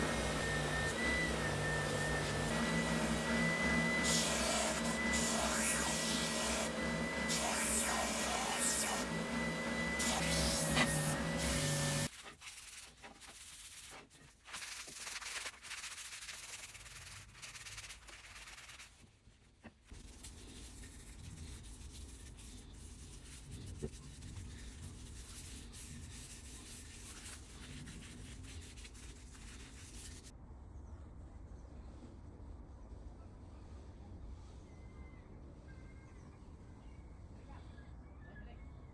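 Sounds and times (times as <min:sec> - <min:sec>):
whining power tool: 0:00.0 - 0:12.1
sandpaper rubbing on wood: 0:00.0 - 0:19.0, 0:19.9 - 0:30.3.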